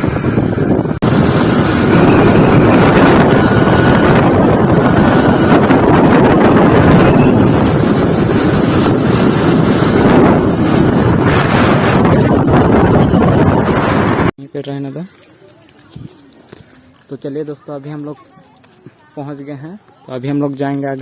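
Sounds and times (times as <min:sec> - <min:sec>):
motorbike engine: 0:00.0 - 0:14.3
wind rushing over microphone: 0:00.0 - 0:14.3
road noise: 0:00.0 - 0:21.0.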